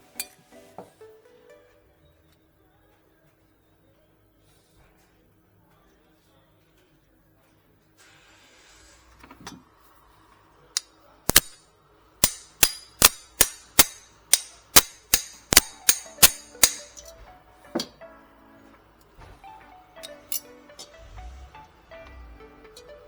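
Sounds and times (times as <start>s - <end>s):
background music: 0.0s - 2.3s, 15.6s - 23.0s
sharp metallic knocks: 11.3s - 11.6s, 12.2s - 17.1s.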